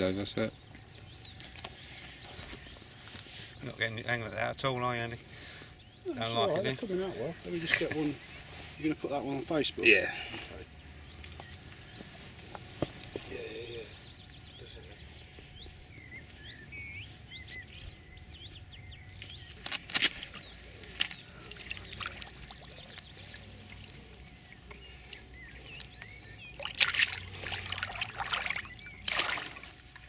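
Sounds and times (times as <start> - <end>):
small birds chirping: 0.0 - 30.0
water splashing and trickling: 20.9 - 23.9, 26.6 - 30.0.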